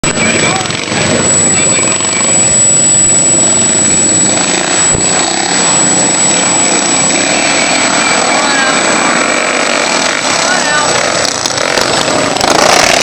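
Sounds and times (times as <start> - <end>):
racing lawnmower engines: 0.0 - 13.0.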